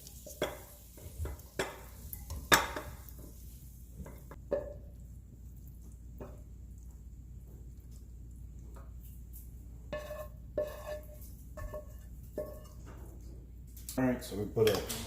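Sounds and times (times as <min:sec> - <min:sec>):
utensil clinking against pan and bowls: 0:00.0 - 0:03.2, 0:04.0 - 0:05.0, 0:09.8 - 0:13.3, 0:14.6 - 0:15.0.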